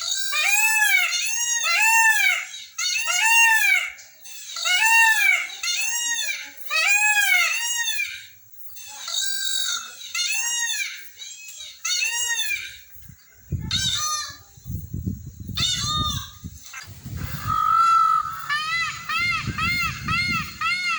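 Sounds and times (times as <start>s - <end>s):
peacock calling: 0.0s - 14.5s, 15.6s - 20.9s.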